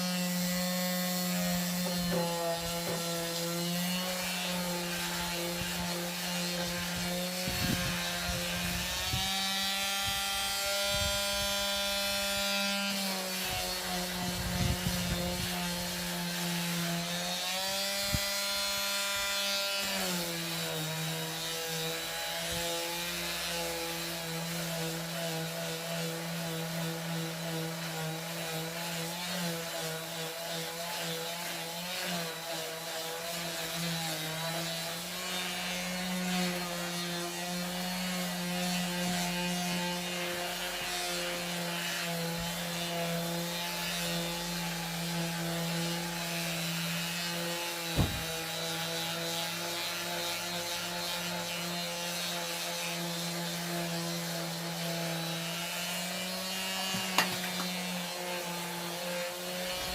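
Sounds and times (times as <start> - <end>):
power sander on wood: 0.0 - 59.9
sharp knock: 48.0 - 48.2, 56.9 - 57.5.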